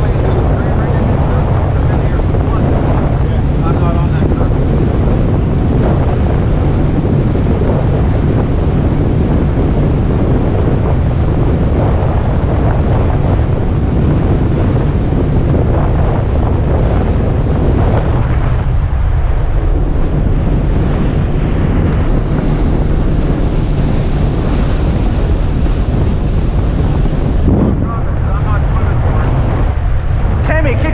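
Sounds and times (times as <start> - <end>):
low engine rumble: 0.0 - 30.9
rushing water and spray: 0.0 - 30.9
wind buffeting microphone: 0.0 - 30.9.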